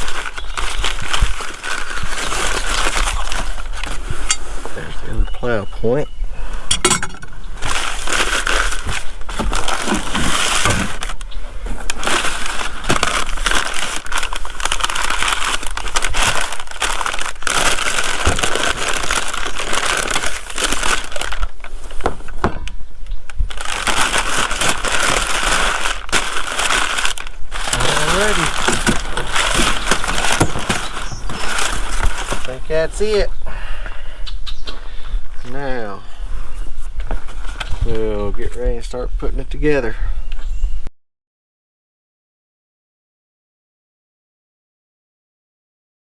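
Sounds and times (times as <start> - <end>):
packing material crinkling: 0.0 - 4.9, 7.6 - 33.4.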